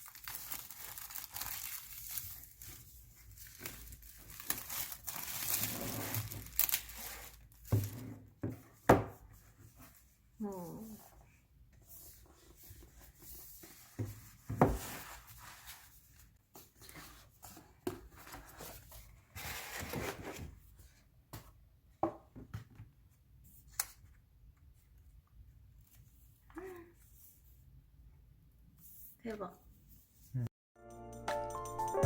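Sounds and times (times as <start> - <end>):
packaging rustling and tearing: 0.0 - 8.0.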